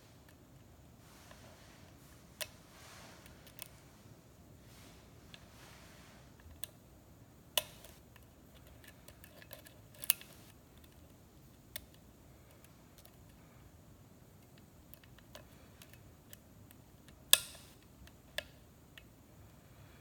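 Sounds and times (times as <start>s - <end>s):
lock pick clicking on pins: 7.5s - 13.4s, 14.3s - 19.6s.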